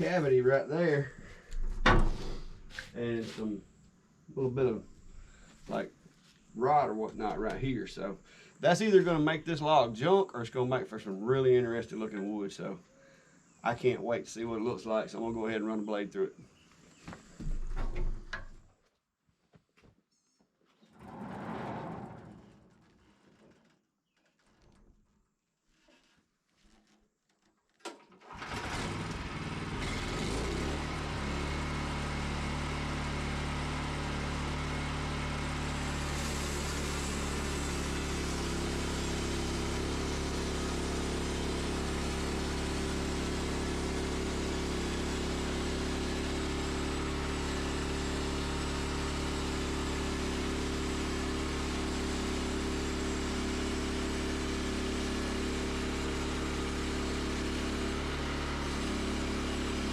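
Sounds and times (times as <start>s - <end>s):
sawmill engine running: 28.4s - 59.9s
band saw cutting log: 35.9s - 48.6s, 54.0s - 59.9s.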